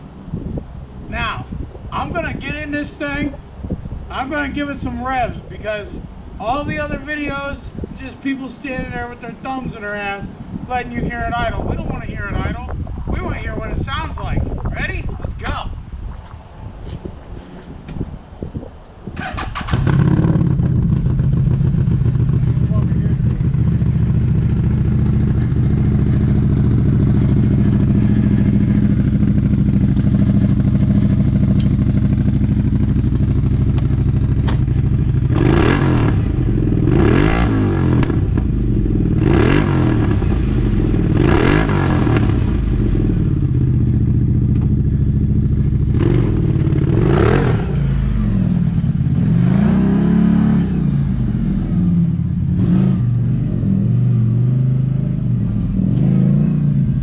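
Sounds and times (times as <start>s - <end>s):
engine idling and revving: 19.2s - 57.0s.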